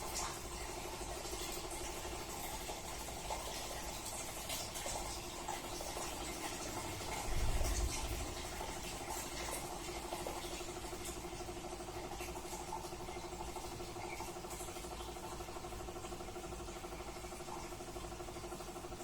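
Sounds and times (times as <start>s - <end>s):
washing machine spinning: 0.0s - 19.0s
low rumble: 7.3s - 8.6s.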